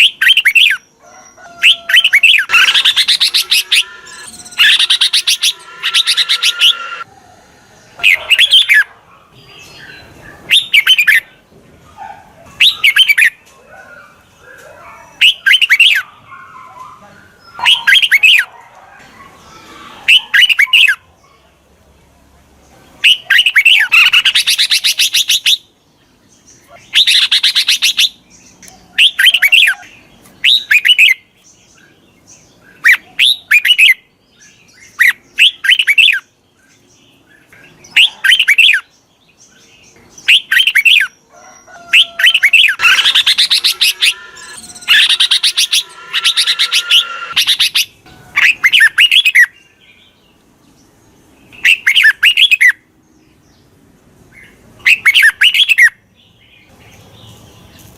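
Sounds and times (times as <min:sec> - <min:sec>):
bird scratchy chattering calls: 0:01.6 - 0:07.0, 0:41.9 - 0:49.5.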